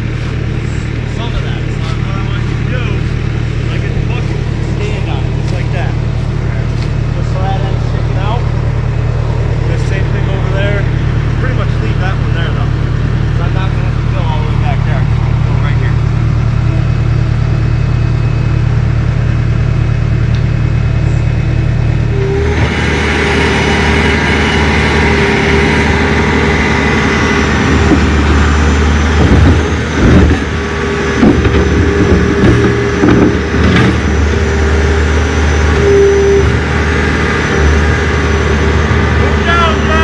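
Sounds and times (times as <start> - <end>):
engine running steadily: 0.0 - 40.0
knocks and rattles: 31.2 - 34.3.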